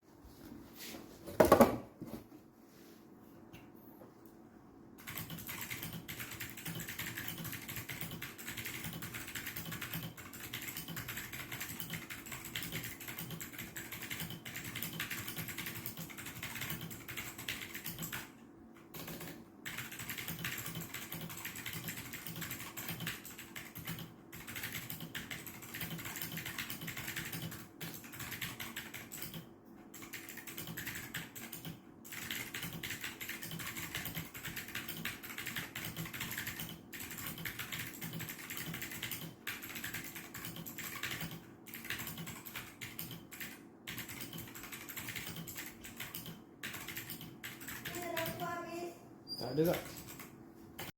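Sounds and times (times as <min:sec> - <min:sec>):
mechanical keyboard typing clatter: 0:05.0 - 0:48.6, 0:49.9 - 0:50.9.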